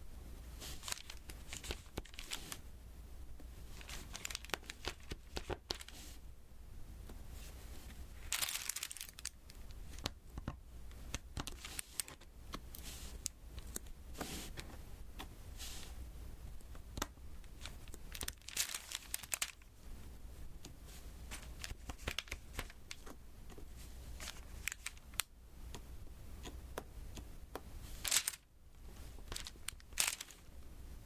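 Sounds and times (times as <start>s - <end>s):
plastic film crinkling: 0.6s - 2.6s, 3.7s - 6.2s, 8.2s - 10.1s, 11.4s - 12.2s, 17.5s - 19.8s, 21.3s - 23.1s, 24.1s - 25.3s, 28.0s - 28.5s, 29.2s - 30.5s.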